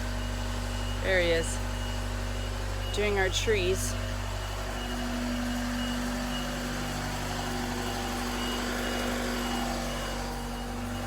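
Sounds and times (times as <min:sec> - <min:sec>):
reversing alarm beeping: 0:00.0 - 0:11.0
truck engine running: 0:00.0 - 0:11.0.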